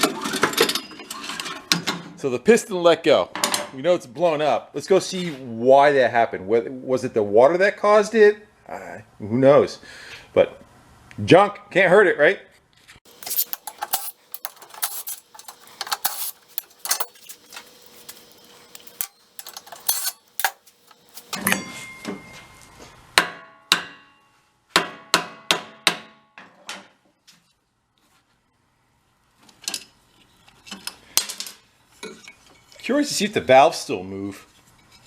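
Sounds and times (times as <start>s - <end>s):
hand tools clinking on metal engine: 13.1s - 21.6s.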